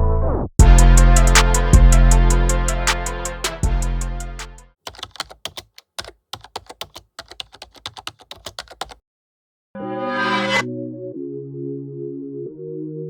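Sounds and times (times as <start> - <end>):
background music: 0.6 - 4.7, 9.8 - 13.0
keyboard typing clicks: 4.9 - 9.0.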